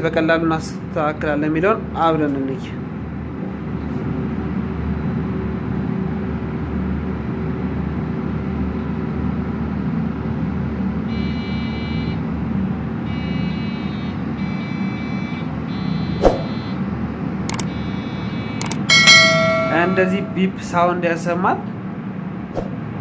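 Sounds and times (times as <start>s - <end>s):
computer beeps: 18.6s - 19.7s.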